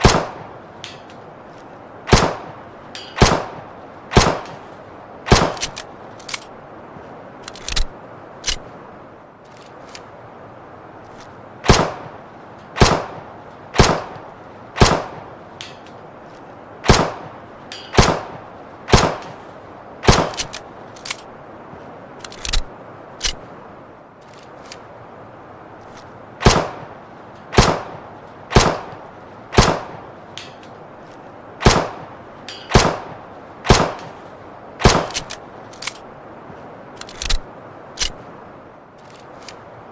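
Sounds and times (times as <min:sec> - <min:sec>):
steady hiss: 0:00.0 - 0:39.9
pistol shots: 0:02.1 - 0:02.5, 0:03.2 - 0:04.6, 0:05.3 - 0:05.8, 0:12.8 - 0:13.2, 0:13.8 - 0:14.2, 0:14.8 - 0:15.2, 0:16.8 - 0:17.2, 0:18.0 - 0:19.4, 0:20.0 - 0:20.5, 0:26.4 - 0:26.8, 0:27.5 - 0:28.9, 0:29.6 - 0:30.0, 0:31.6 - 0:32.1, 0:32.7 - 0:33.1, 0:33.7 - 0:34.2.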